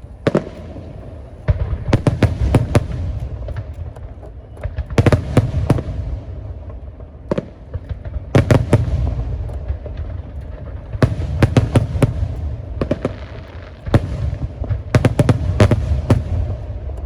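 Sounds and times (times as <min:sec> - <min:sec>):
fireworks bursting: 0:00.0 - 0:17.0
low rumbling echo: 0:00.0 - 0:17.0.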